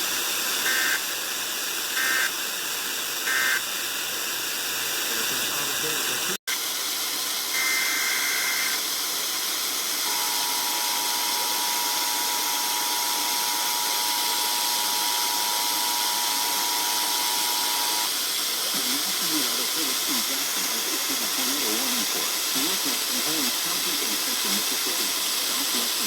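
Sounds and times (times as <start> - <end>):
radio hiss: 0.0 - 26.0
warbling digital data tones: 1.9 - 2.4.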